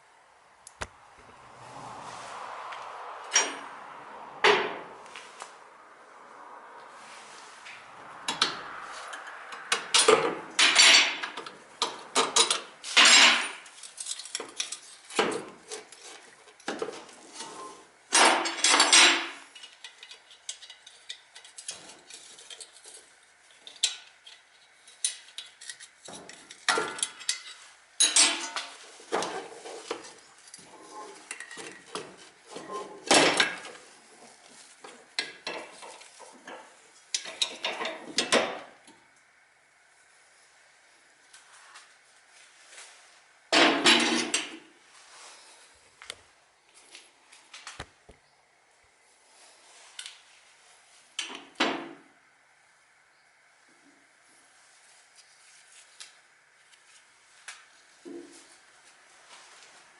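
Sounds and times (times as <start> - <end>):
metal tools clinking and clanking: 9.1 - 16.2, 23.6 - 28.7.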